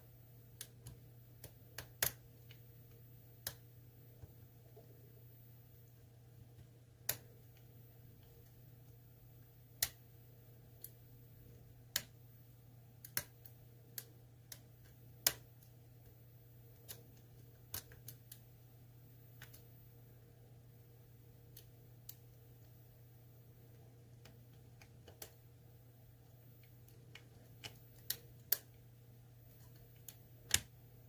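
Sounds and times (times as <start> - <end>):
low steady hum: 0.0 - 31.0.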